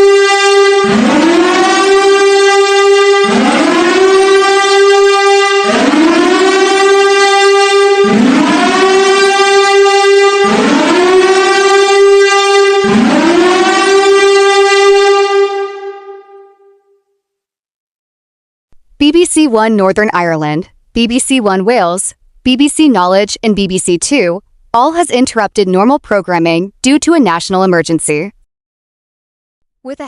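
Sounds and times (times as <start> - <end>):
emergency siren wailing: 0.0 - 17.0.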